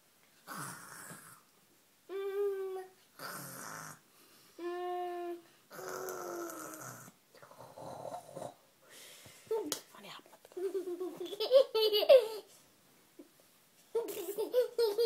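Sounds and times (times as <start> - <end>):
child fake-snoring: 0.4 - 1.5, 3.2 - 4.0, 4.6 - 8.6.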